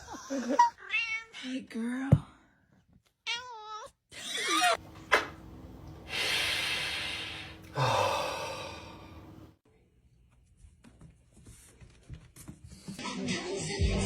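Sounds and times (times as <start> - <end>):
breathy exhalations: 6.1 - 9.3.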